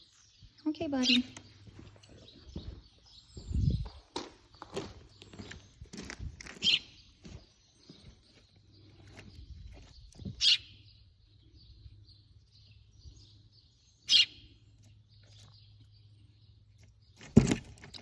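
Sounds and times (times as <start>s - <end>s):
baby bird chirping: 6.6s - 7.4s, 8.9s - 11.1s, 12.7s - 16.2s.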